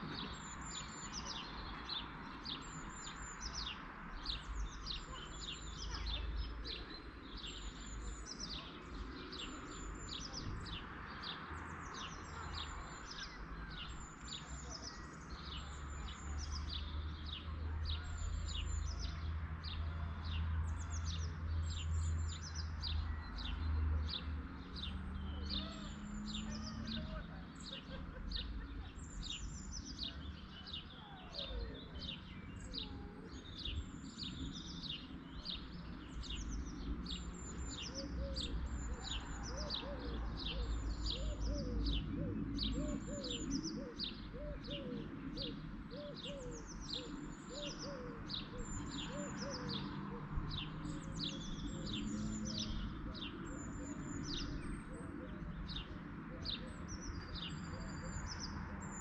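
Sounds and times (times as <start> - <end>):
songbirds chirping: 0.0 - 59.0.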